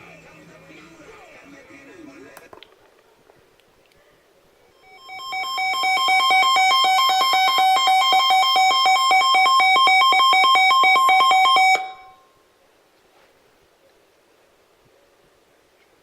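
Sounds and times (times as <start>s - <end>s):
rapid high alert beeps: 4.8s - 12.2s.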